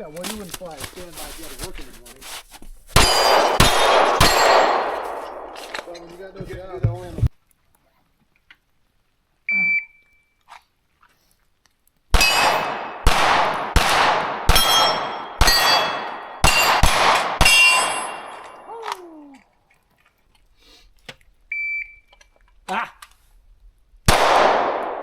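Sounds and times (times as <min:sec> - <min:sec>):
steel target ringing: 0:03.0 - 0:05.4, 0:12.2 - 0:12.8, 0:14.5 - 0:18.6
pistol shots: 0:03.0 - 0:05.9, 0:12.1 - 0:18.6, 0:24.1 - 0:25.0
shot timer beep: 0:09.5 - 0:10.2.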